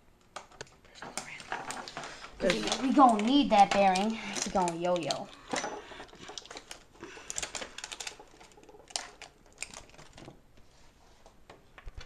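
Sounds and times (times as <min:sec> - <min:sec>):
small parts and packaging clicking: 0:00.2 - 0:10.4.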